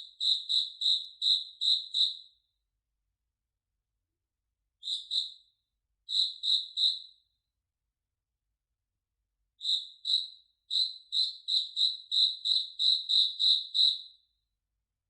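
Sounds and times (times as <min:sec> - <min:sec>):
cricket chirping: 0:09.6 - 0:14.0.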